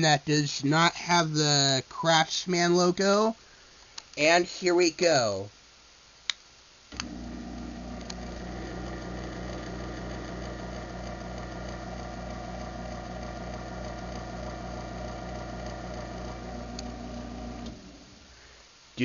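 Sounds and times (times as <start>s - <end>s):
faint click: 3.8s - 4.2s, 6.2s - 7.1s
garage door opener motor hum: 6.9s - 18.3s.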